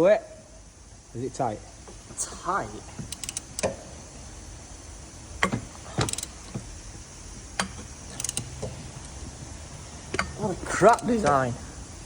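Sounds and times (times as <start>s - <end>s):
socket ratchet clicking: 3.0s - 3.9s, 5.4s - 6.5s, 7.5s - 9.2s, 10.1s - 11.4s.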